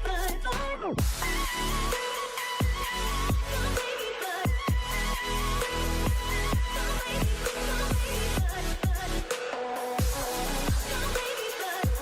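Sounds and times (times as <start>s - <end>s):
electronic dance music: 0.0s - 12.0s
deep kick drum: 1.0s - 1.3s, 2.6s - 3.6s, 4.5s - 4.9s, 6.1s - 9.2s, 10.0s - 11.0s.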